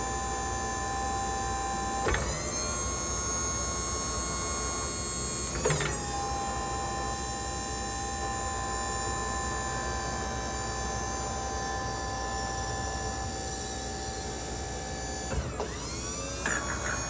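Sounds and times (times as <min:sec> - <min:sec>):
electric motor whine: 0:10.4 - 0:17.0.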